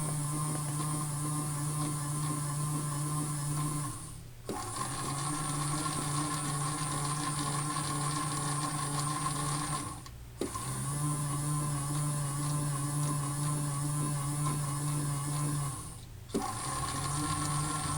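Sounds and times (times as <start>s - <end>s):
small electric motor whirring: 0.0s - 17.9s
motor restarting click: 15.3s - 17.9s.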